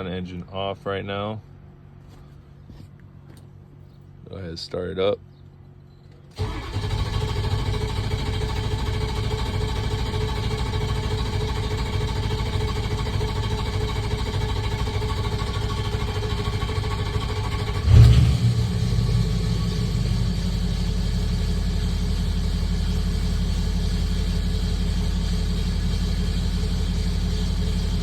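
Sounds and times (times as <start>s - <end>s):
diesel engine starting and running: 6.3s - 28.0s
loud grinding rattle: 6.4s - 28.0s.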